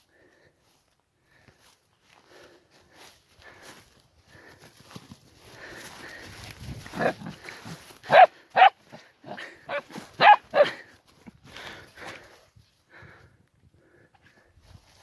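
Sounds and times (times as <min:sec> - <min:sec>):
dog barking: 0:08.1 - 0:10.8.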